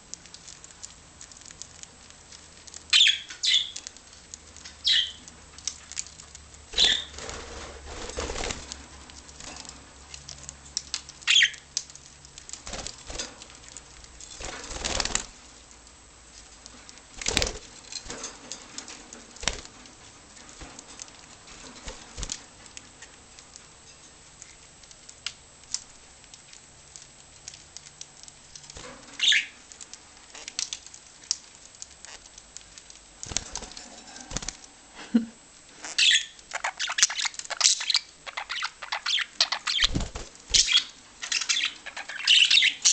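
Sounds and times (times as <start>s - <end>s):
light pattering and rustling: 0.1s - 34.8s
wing flapping: 6.7s - 8.8s, 14.4s - 15.4s, 17.2s - 18.3s, 38.3s - 40.8s
budgerigar chirps: 6.8s - 7.1s.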